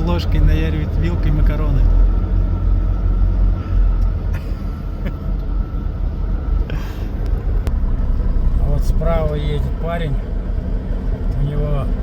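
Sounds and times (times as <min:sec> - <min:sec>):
faint steady whine: 0:00.0 - 0:12.0
truck engine and road rumble: 0:00.0 - 0:12.0.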